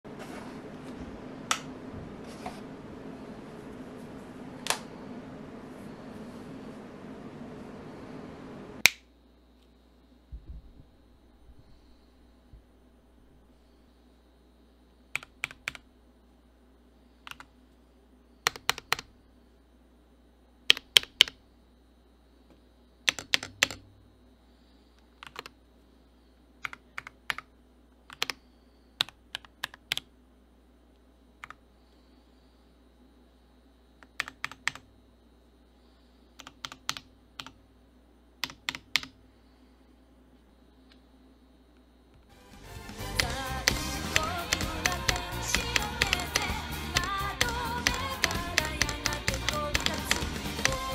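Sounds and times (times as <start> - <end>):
mechanical keyboard typing: 15.2 - 15.8, 17.3 - 17.5, 18.4 - 19.1, 20.7 - 21.4, 23.1 - 23.8, 25.2 - 25.6, 26.6 - 27.5, 28.1 - 28.4, 29.0 - 30.1, 34.0 - 34.8, 36.4 - 37.6, 38.4 - 39.2, 43.2 - 50.9.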